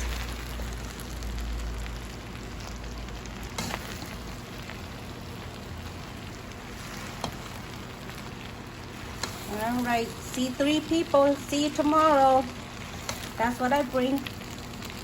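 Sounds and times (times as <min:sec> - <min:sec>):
noodles sizzling in a pan: 0:00.0 - 0:15.0.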